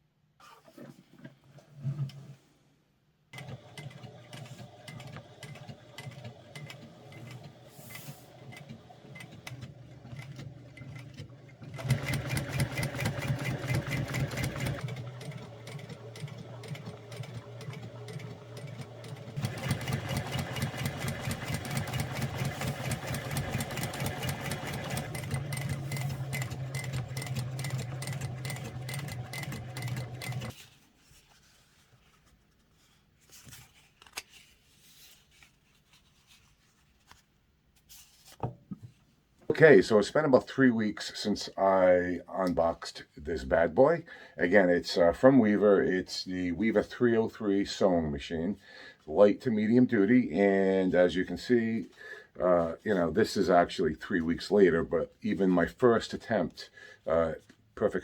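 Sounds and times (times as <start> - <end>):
sewing machine running: 3.4 - 30.6.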